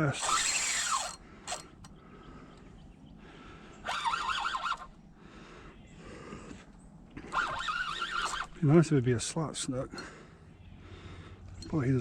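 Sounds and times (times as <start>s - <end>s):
bird calling: 0.6s - 6.4s, 7.2s - 8.6s.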